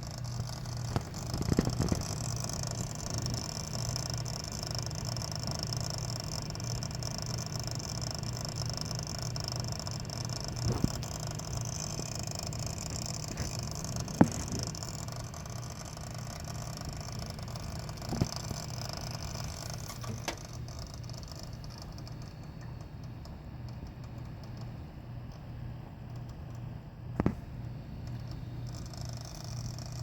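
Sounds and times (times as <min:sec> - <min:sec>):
cpu cooler rattling buzz: 0:00.0 - 0:30.0
sharp clicks: 0:28.0 - 0:30.0.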